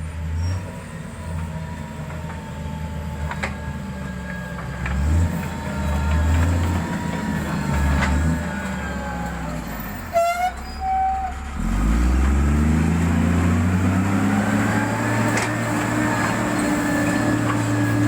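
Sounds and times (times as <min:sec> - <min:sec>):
diesel engine running and revving: 0:00.0 - 0:18.0
short horn toot: 0:10.1 - 0:11.4.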